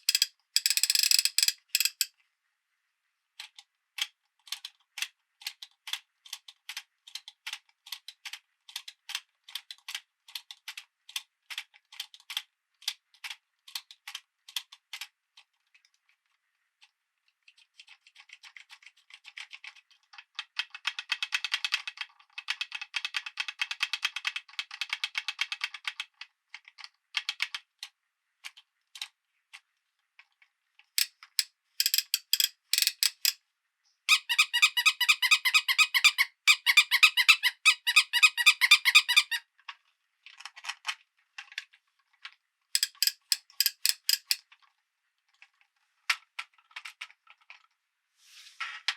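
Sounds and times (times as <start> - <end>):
plastic toy pieces clattering: 0.0 - 2.1, 31.0 - 33.4, 40.2 - 47.7.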